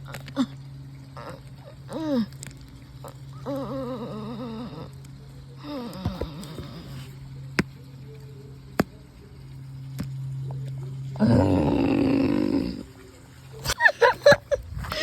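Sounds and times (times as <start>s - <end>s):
low steady hum: 0.0s - 15.0s
person imitating animal roar: 3.4s - 5.0s, 11.2s - 13.0s.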